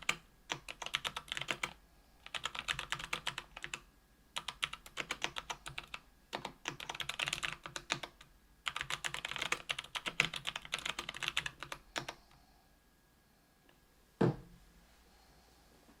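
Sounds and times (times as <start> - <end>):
keyboard typing: 0.0 - 3.8, 4.4 - 12.3
low thump: 14.2 - 14.5.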